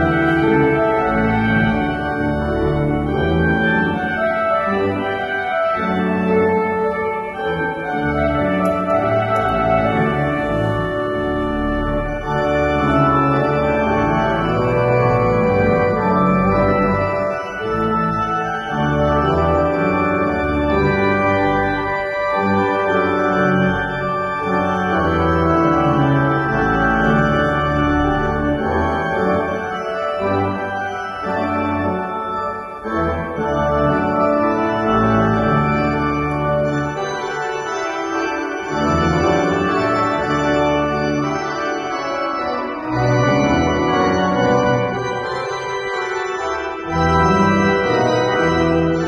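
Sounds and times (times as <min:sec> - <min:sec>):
organ playing held chords: 0:00.0 - 0:49.0.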